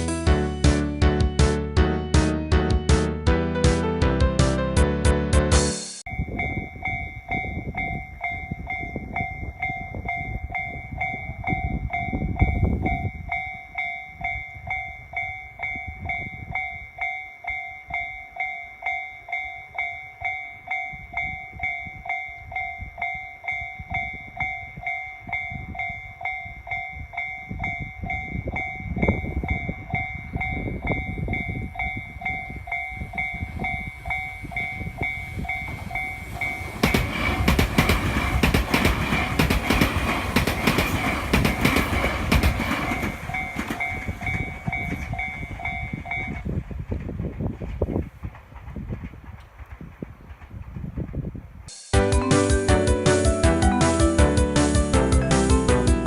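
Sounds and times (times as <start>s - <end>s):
train rumbling: 0.0s - 56.0s
level-crossing bell dinging: 6.1s - 37.5s, 39.0s - 46.4s.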